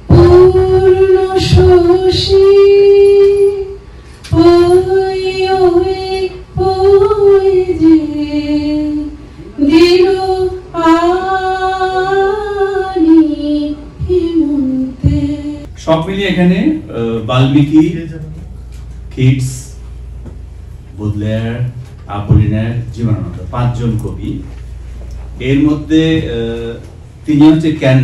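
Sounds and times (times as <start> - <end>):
woman singing slow song: 0.0 - 15.7.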